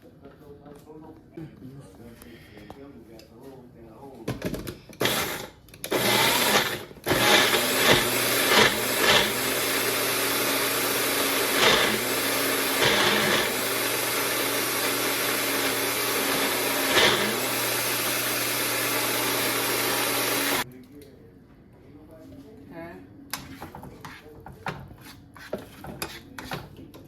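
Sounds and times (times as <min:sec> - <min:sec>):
blender motor running: 0:05.0 - 0:20.6.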